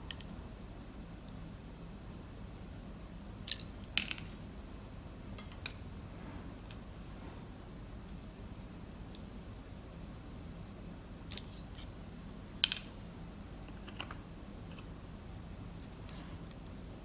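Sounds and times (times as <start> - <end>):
small metal parts clicking: 3.5 - 4.4, 11.3 - 11.9.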